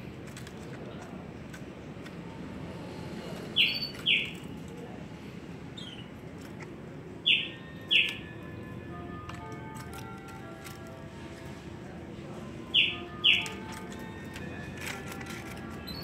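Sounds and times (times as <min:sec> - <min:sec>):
pet bird chirping: 0:03.4 - 0:04.8, 0:05.6 - 0:08.5, 0:12.6 - 0:16.0.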